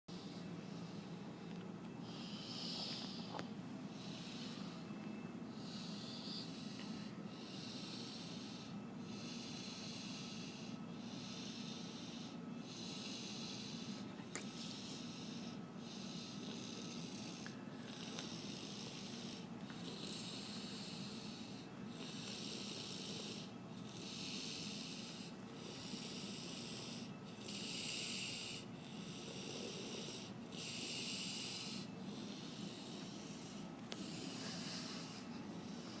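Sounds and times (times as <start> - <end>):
person snoring: 2.1 - 4.8, 5.5 - 36.0.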